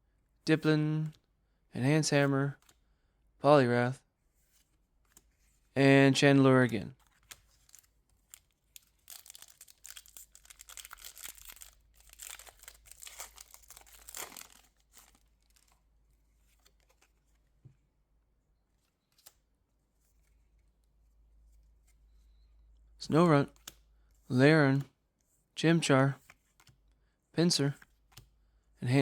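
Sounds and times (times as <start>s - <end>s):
foil wrapper tearing and crinkling: 7.7s - 15.6s.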